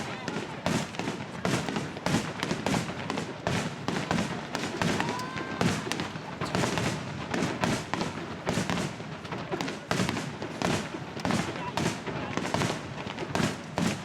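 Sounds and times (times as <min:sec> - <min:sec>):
fireworks bangs and crackling: 0:00.0 - 0:14.0
faint firework whistle: 0:04.8 - 0:07.0.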